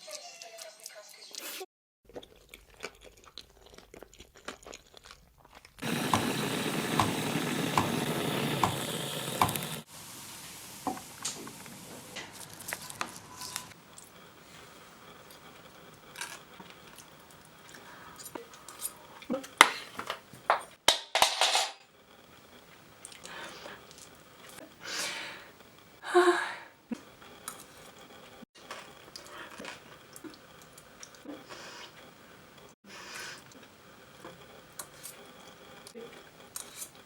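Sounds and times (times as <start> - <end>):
chewing and crunching: 0.0 - 5.8, 22.5 - 24.6, 28.6 - 32.1.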